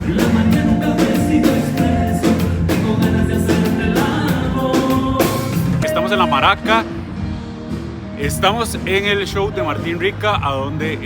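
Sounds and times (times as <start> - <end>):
person singing: 0.0 - 6.9
drums: 0.0 - 11.0.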